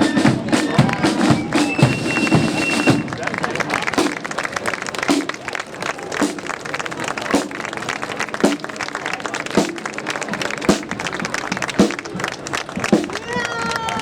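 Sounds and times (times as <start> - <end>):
rapid snare drum taps: 0.0 - 3.0.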